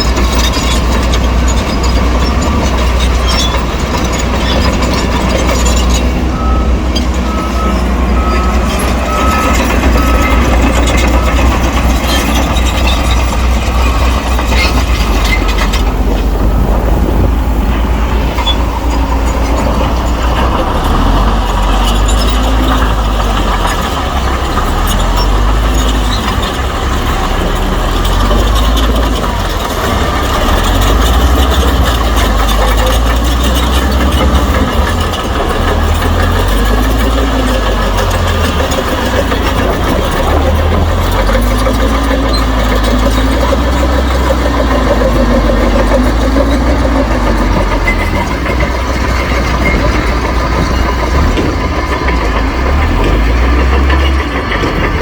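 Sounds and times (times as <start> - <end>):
heavy diesel engines under load: 0.0 - 55.0
reversing alarm beeping: 2.1 - 23.9.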